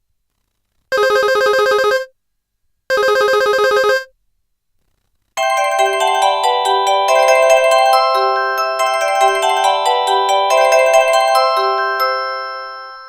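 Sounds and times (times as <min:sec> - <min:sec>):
fast electronic phone ring: 0:00.9 - 0:02.1, 0:02.9 - 0:04.1
melodic ringtone: 0:05.4 - 0:13.0.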